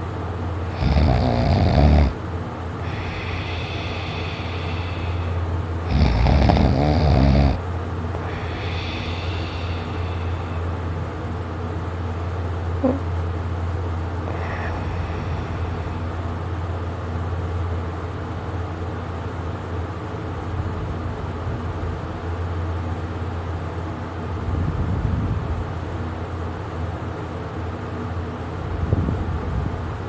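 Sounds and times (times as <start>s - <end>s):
steady low hum: 0.0s - 30.0s
person snoring: 0.7s - 2.2s, 2.8s - 7.6s, 8.2s - 10.6s, 14.2s - 16.2s.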